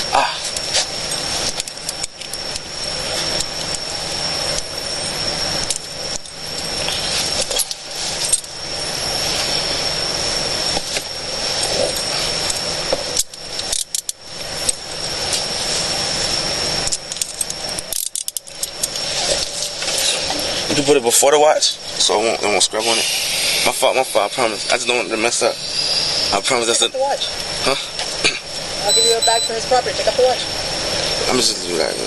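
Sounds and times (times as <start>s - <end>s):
steady background noise: 0.0s - 32.0s
metal handcuffs jingling and clicking: 11.9s - 14.8s, 16.8s - 19.8s.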